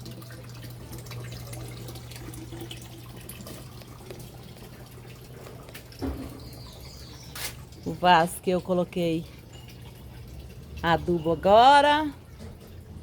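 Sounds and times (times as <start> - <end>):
water trickling and dripping: 0.0 - 13.0.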